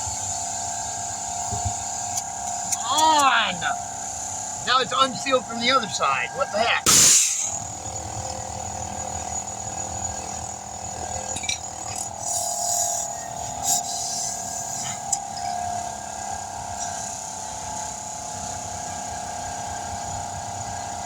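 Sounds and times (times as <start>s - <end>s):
air hissing: 0.0s - 8.1s, 11.4s - 15.3s
steady machine hum: 0.0s - 21.0s.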